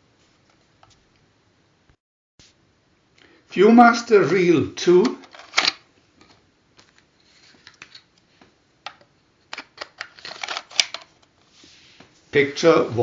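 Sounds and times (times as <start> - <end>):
cardboard reel being handled: 4.2 - 8.0, 9.5 - 11.8.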